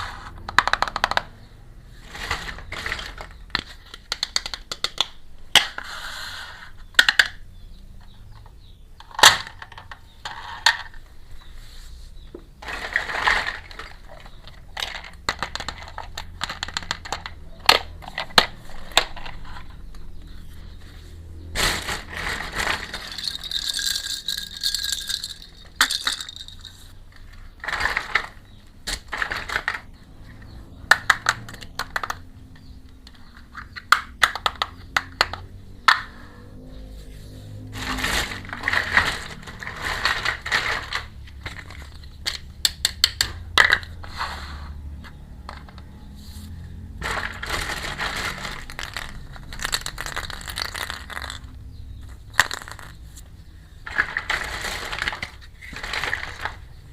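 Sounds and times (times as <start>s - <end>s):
small toy pieces clicking: 12.6s - 19.4s, 22.6s - 26.7s, 33.8s - 36.0s, 38.4s - 43.9s, 47.0s - 53.1s
rustling: 18.2s - 29.9s, 36.9s - 42.1s, 44.0s - 56.9s.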